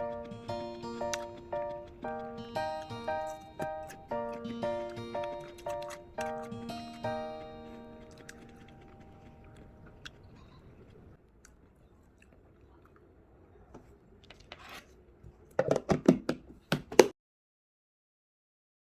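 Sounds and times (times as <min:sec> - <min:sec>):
music: 0:00.0 - 0:09.8
crunching crisp food: 0:00.0 - 0:13.1.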